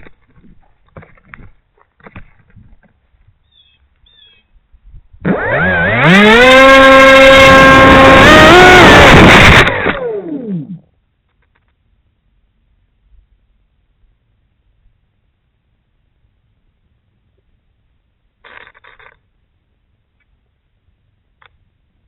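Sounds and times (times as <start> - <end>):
electric motor and propeller whine: 5.2 - 10.9.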